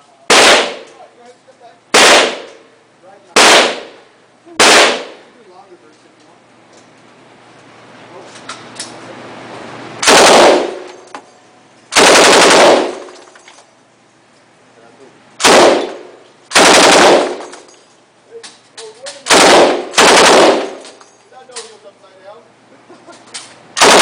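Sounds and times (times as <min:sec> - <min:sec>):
machine gun bursts: 0:10.0 - 0:11.1, 0:11.9 - 0:13.4, 0:15.4 - 0:17.7, 0:19.2 - 0:21.0, 0:23.8 - 0:24.0.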